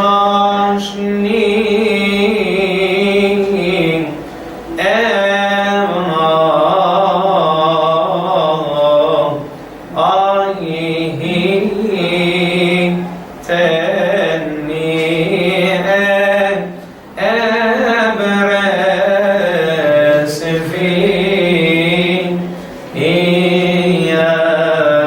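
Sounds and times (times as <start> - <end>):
breaths: 22.5 - 22.9.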